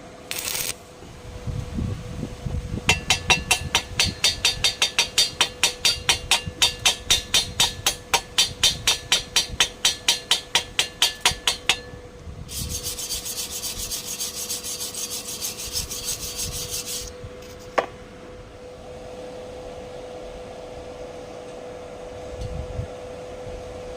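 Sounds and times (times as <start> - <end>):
rhythmic hand scraping: 12.5 - 17.6.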